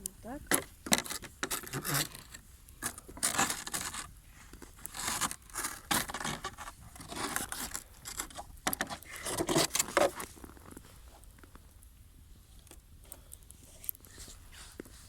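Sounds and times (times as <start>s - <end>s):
objects scraping and rustling: 0.5s - 11.4s, 13.5s - 15.0s.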